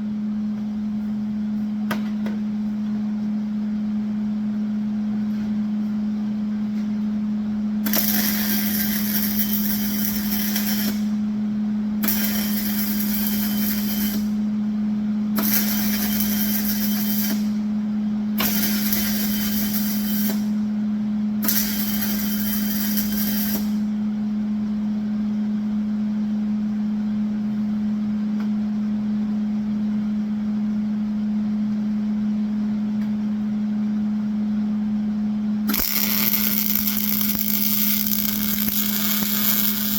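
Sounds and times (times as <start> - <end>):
steady low hum: 0.0 - 39.9
welding arc crackling and hissing: 7.9 - 11.2, 12.0 - 14.4, 15.4 - 17.6, 18.4 - 20.6, 21.4 - 23.8, 35.7 - 39.9.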